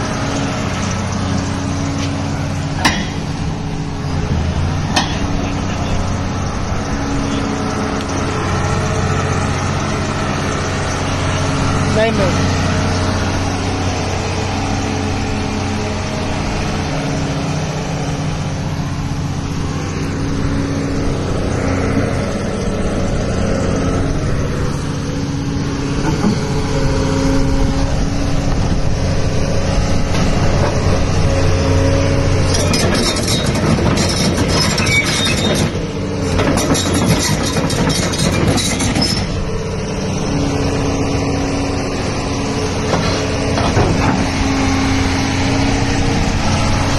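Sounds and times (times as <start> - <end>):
excavator diesel engine running: 0.0 - 46.9
harsh rattling scraping: 29.9 - 40.0.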